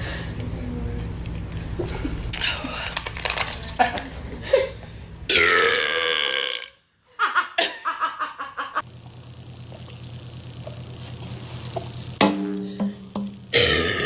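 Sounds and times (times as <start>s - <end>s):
person burping loudly: 5.3s - 6.8s, 13.5s - 14.0s.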